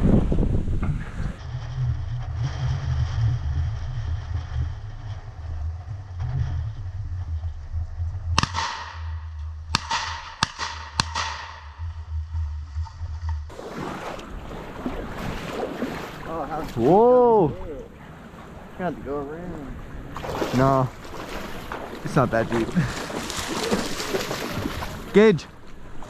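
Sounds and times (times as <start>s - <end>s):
wind buffeting microphone: 0.0s - 8.4s, 11.8s - 26.0s
shotgun shots with echo: 8.4s - 11.8s.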